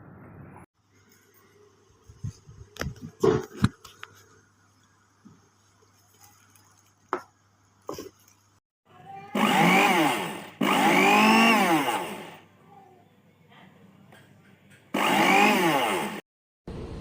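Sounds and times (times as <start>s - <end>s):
blender motor running: 9.4s - 12.4s, 15.0s - 16.2s.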